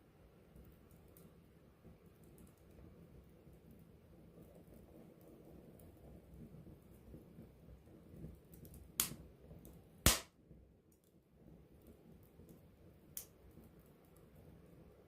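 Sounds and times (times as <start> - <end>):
rustle of flame: 0.0 - 15.0
small crackles: 2.0 - 10.3, 10.9 - 15.0
burning wood popping: 8.4 - 10.3.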